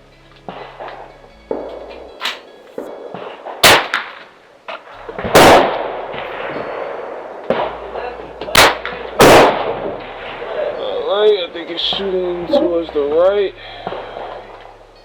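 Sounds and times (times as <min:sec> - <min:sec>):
rifle shots: 0:00.5 - 0:10.7.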